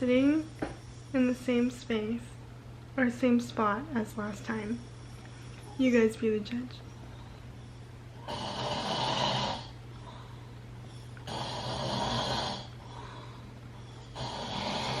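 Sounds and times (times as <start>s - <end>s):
steady low hum: 0.0s - 15.0s
person snoring: 8.2s - 9.8s, 11.2s - 13.4s, 14.1s - 15.0s.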